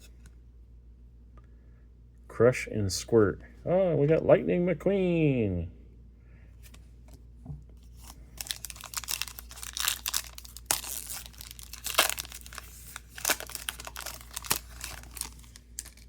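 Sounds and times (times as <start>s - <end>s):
card pack wrapper crinkling: 7.8s - 16.0s.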